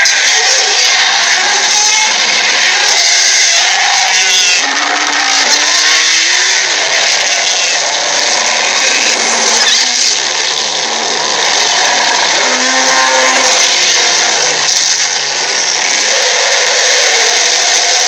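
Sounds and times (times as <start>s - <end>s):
drawn-out gliding animal calls: 0.0s - 18.0s
many animals running: 0.0s - 18.0s.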